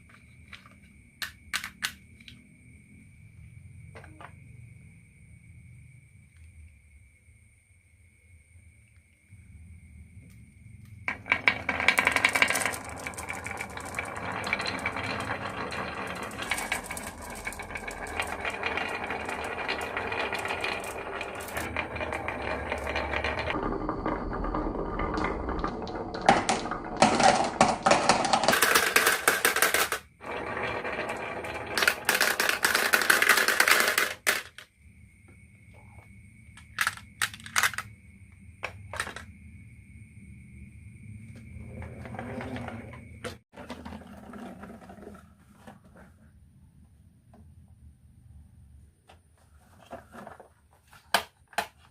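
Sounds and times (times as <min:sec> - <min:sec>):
marbles rattling down marble run: 0:11.1 - 0:34.7, 0:36.6 - 0:37.9.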